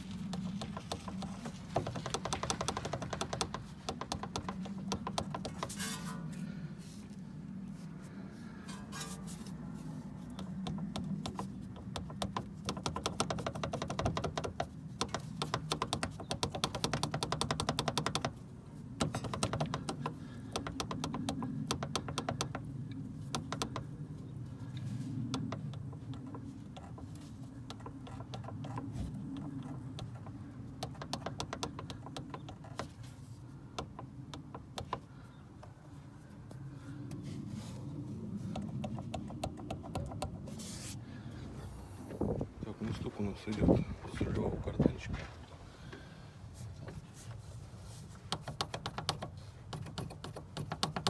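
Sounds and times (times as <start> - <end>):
steering shaft knocking: 0.0 - 5.9, 10.3 - 35.9, 38.4 - 40.6, 48.2 - 51.0
vehicle low rumble: 0.0 - 50.9.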